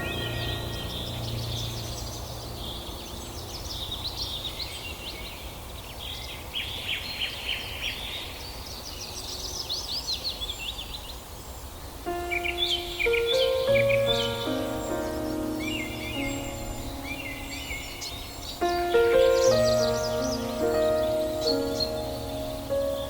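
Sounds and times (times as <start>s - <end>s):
small birds chirping: 0.0s - 23.0s.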